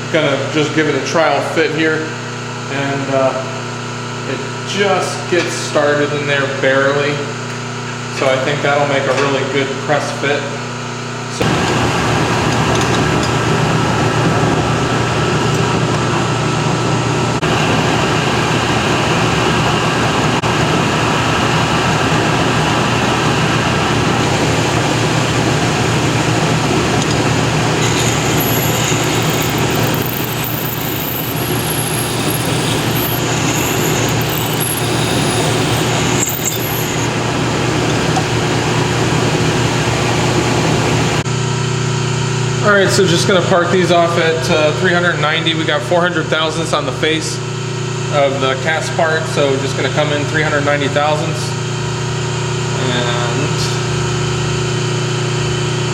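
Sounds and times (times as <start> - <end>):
metalworking machine humming: 26.1 - 37.4
high-pitched noise: 27.8 - 37.1.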